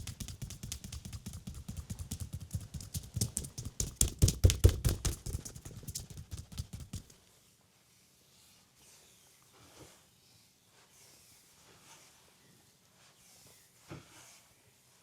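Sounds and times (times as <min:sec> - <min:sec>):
hands tapping leg: 0:00.0 - 0:07.1.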